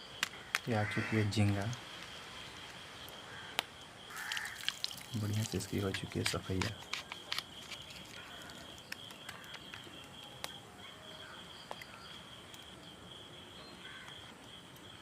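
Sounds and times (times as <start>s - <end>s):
faint bird calls: 0.0s - 1.8s, 6.7s - 12.4s, 13.6s - 14.3s
insect high-pitched trill: 0.0s - 15.0s.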